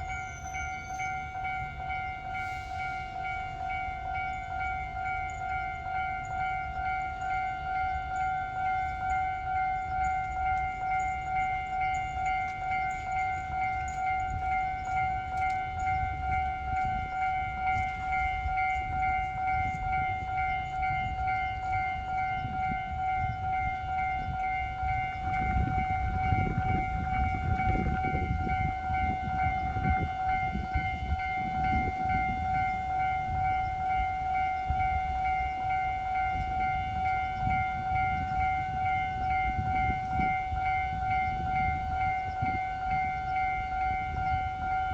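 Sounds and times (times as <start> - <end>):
level-crossing warning bell: 0.0 - 44.9
train rumbling over crossing: 0.0 - 44.9.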